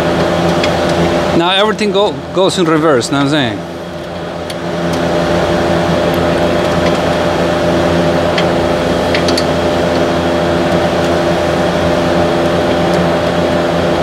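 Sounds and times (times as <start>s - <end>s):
machine droning hum: 0.0s - 14.0s.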